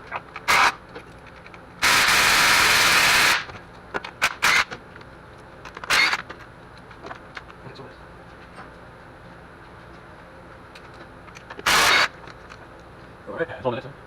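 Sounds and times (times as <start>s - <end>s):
pneumatic tool rushing: 0.5s - 0.8s, 1.8s - 3.5s, 4.2s - 4.7s, 5.9s - 6.2s, 11.6s - 12.1s.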